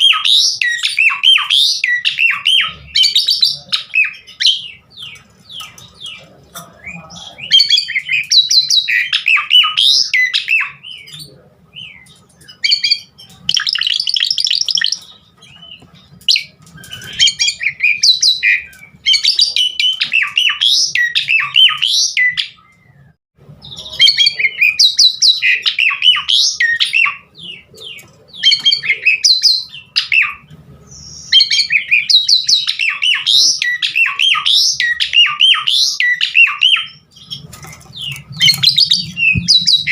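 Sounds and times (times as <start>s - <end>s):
starling singing: 0.0s - 39.9s.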